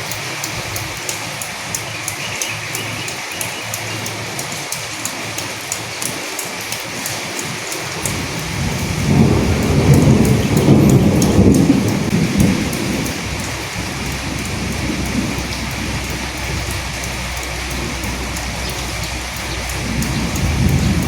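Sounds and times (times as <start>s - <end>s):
rain hissing: 0.0s - 21.0s
raindrop ticks: 0.0s - 21.0s
thunder rumbling: 7.9s - 21.0s.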